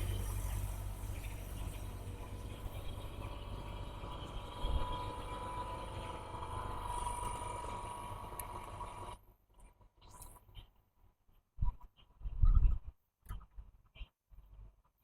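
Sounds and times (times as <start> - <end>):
laminating machine humming: 0.0 - 9.2.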